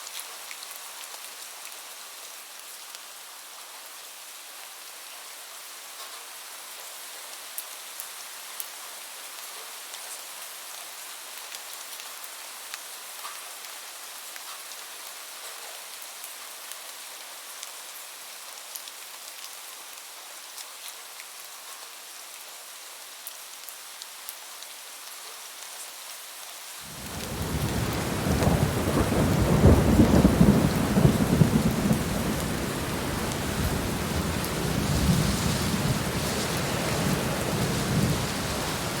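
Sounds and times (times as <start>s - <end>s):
steady rain falling: 0.0s - 39.0s
deep thunder rumble: 26.9s - 39.0s.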